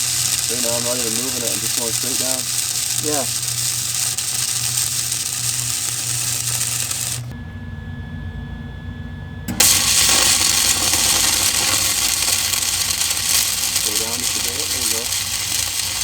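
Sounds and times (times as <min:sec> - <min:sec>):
welding arc crackling: 0:00.0 - 0:07.3, 0:09.5 - 0:16.0
low hum: 0:00.0 - 0:16.0.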